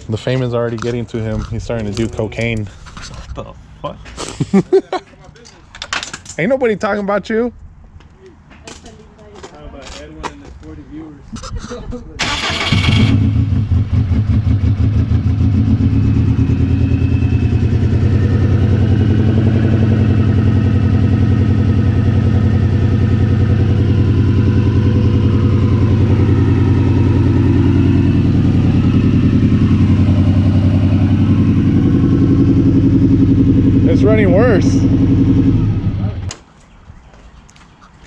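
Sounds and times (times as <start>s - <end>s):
car engine idling rough: 12.7s - 36.3s.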